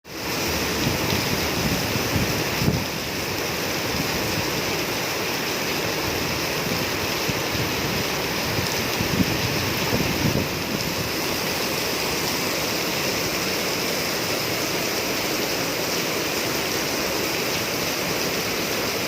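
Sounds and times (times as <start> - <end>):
steady rain falling: 0.1 - 19.0
wind rumble on microphone: 0.8 - 2.9, 6.7 - 11.2.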